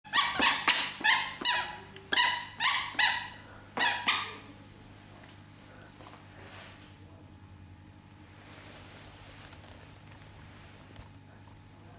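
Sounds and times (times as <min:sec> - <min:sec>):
shoes squeaking: 0:00.1 - 0:04.4.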